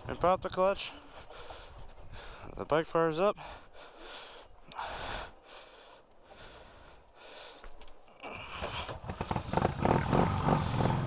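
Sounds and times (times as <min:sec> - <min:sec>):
heavy breathing: 0:00.9 - 0:02.6, 0:03.4 - 0:11.0
motorcycle engine running: 0:09.0 - 0:11.0.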